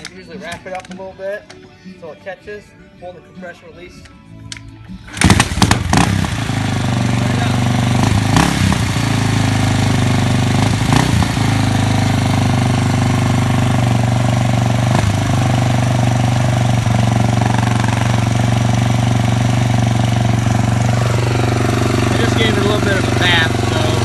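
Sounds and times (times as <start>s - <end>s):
motorcycle engine idling: 5.1s - 24.0s.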